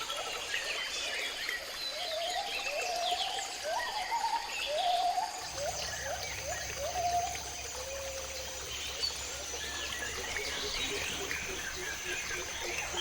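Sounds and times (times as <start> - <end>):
insect drone: 5.4 - 13.0
low hum: 5.4 - 13.0.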